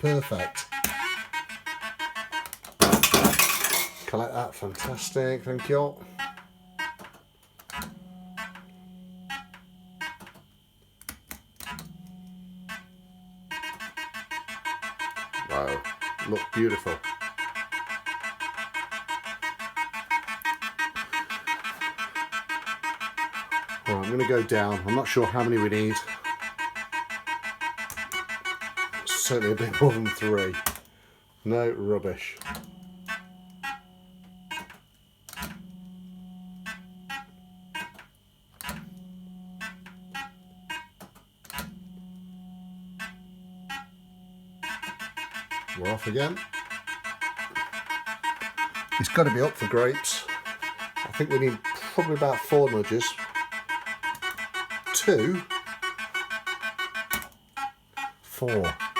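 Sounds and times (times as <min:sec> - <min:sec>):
fruit machine electronic bleeps: 0:00.0 - 0:07.0, 0:12.6 - 0:30.8, 0:41.7 - 0:58.9
electronic bleeps: 0:44.6 - 0:58.9.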